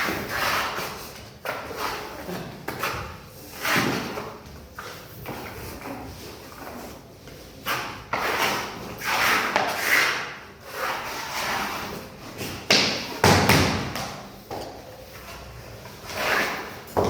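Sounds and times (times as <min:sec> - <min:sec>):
floor planks thudding: 0:12.7 - 0:14.6.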